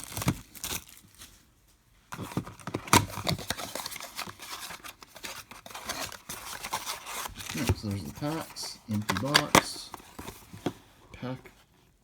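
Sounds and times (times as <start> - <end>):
card packs rustling: 2.1 - 11.7.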